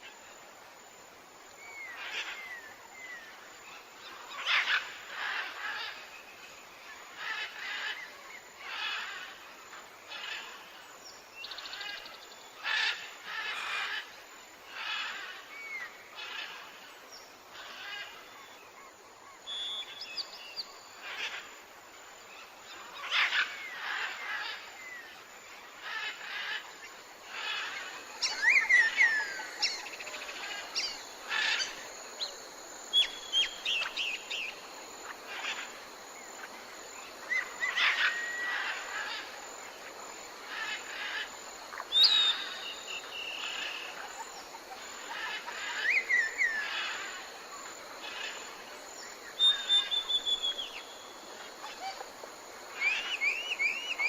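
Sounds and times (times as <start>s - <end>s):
birds chirping and whistling: 41.9s - 43.6s, 49.4s - 50.8s.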